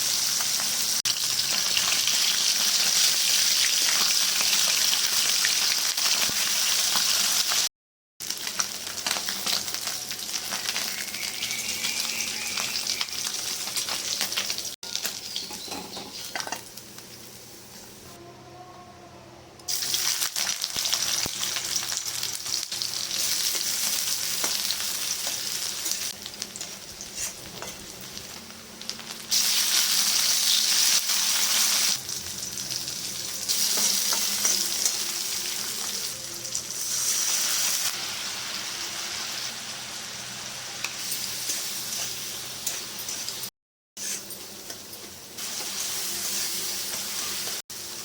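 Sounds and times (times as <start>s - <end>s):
food sizzling in hot oil: 0.0s - 18.1s, 19.7s - 48.0s.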